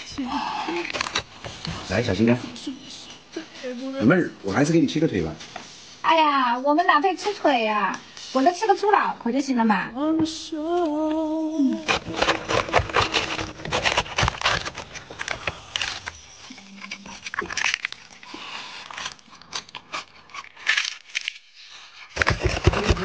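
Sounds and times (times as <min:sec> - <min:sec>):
crisp pig skin crunching: 0:11.8 - 0:23.0.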